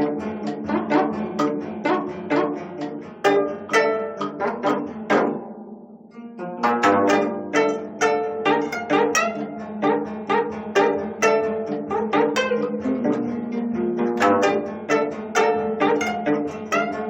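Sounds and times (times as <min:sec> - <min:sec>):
held low note: 0:00.0 - 0:05.7
plucked zither notes: 0:00.0 - 0:17.0.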